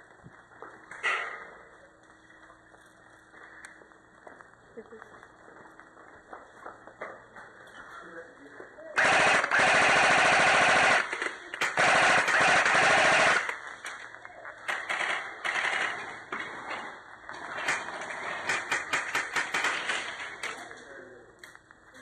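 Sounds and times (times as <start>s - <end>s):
airsoft guns firing: 9.0s - 16.6s, 17.4s - 20.7s.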